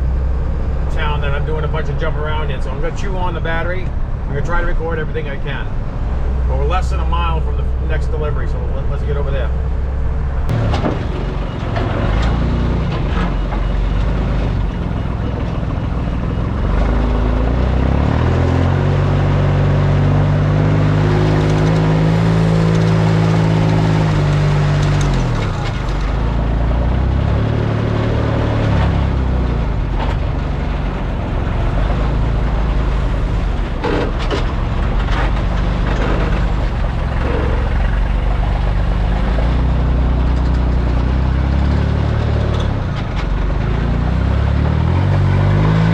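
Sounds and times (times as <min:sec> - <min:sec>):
truck engine running: 0:00.0 - 0:45.9.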